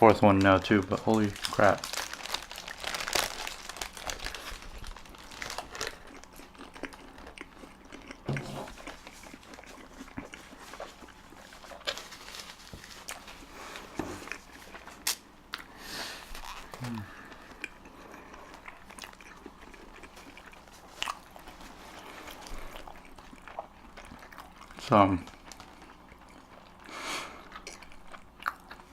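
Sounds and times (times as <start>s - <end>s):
paper wrapping crinkling: 0.2s - 7.2s, 8.7s - 15.2s
chewing food: 1.9s - 15.7s, 16.4s - 28.9s.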